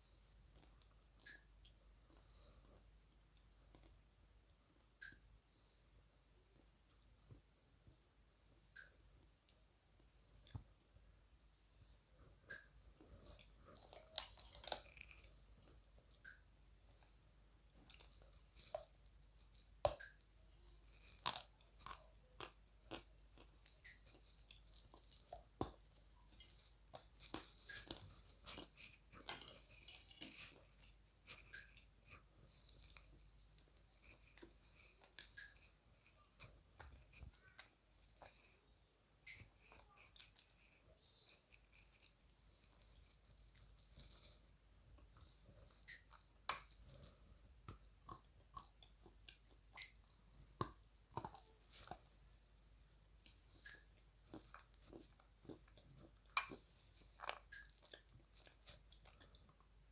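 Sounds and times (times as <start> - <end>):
chewing and crunching clay: 12.5 - 59.9.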